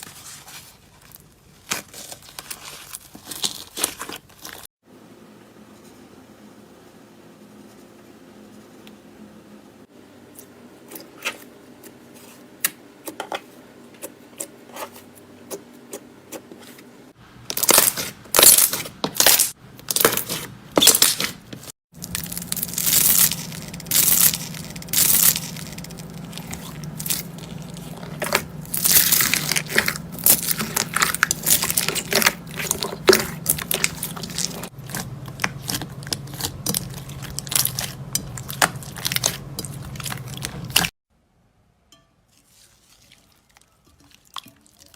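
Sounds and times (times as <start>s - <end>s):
slime crackling and popping: 22.0s - 40.9s.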